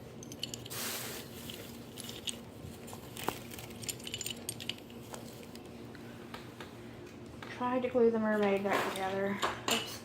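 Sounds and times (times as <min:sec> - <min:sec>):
small hard pieces clicking and clinking: 0:01.4 - 0:02.4, 0:03.1 - 0:05.0.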